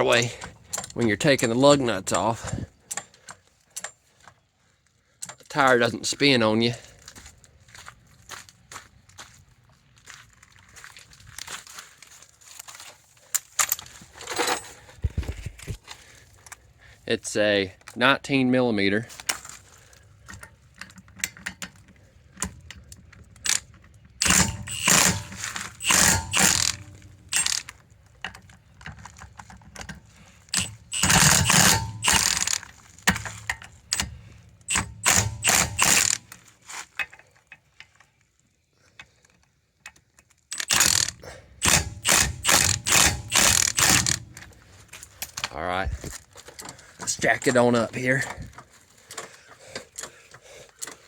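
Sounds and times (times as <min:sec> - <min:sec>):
ratchet wrench clicking: 0:23.4 - 0:23.6, 0:24.2 - 0:27.7, 0:30.5 - 0:36.2, 0:40.5 - 0:44.4.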